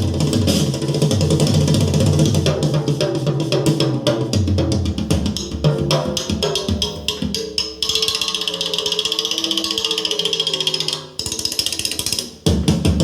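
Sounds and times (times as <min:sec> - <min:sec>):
music with drums and bass: 0:00.0 - 0:08.6, 0:11.3 - 0:13.0
fast high ticking rhythm: 0:00.0 - 0:13.0.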